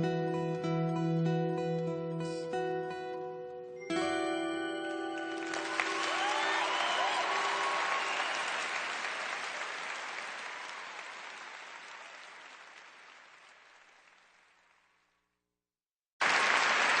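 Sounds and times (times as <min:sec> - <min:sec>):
audience applause: 0:05.0 - 0:15.0, 0:16.2 - 0:17.0.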